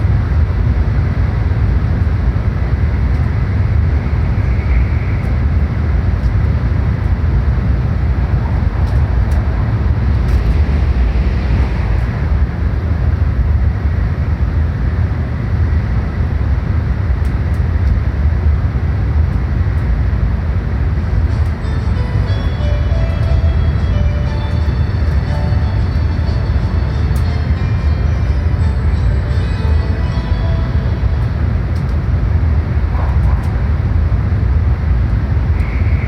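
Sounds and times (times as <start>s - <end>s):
train wheels rumbling on track: 0.0s - 36.0s
even rushing noise: 7.8s - 14.7s.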